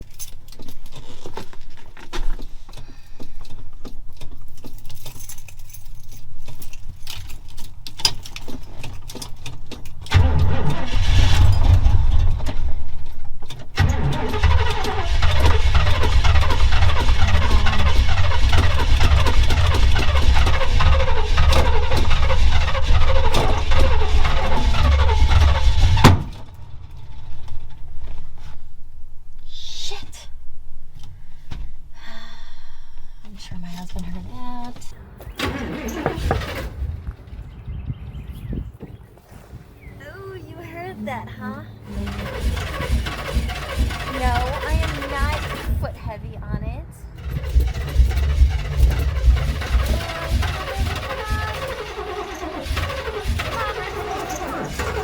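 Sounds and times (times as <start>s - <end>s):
light clicks and rattles: 0.0s - 10.7s
car engine cranking on starter: 6.7s - 28.6s, 32.8s - 37.6s, 41.8s - 46.2s, 47.1s - 55.0s.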